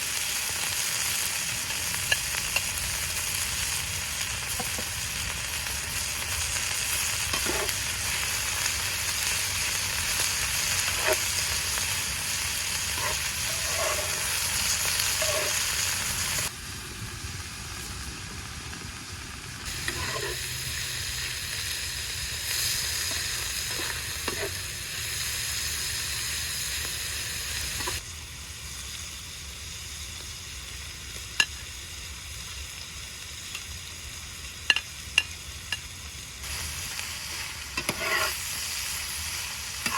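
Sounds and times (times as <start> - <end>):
food sizzling in oil: 0.0 - 39.9
utensil tapping and scraping pan: 13.0 - 14.3, 19.8 - 20.4, 23.1 - 24.5, 37.8 - 38.3.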